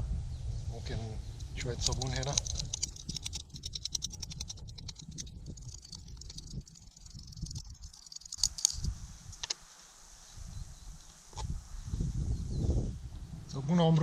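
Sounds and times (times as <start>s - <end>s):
low wind rumble: 0.0s - 14.0s
light scraping ticks: 1.4s - 9.6s
sharp clicks: 1.4s - 9.6s.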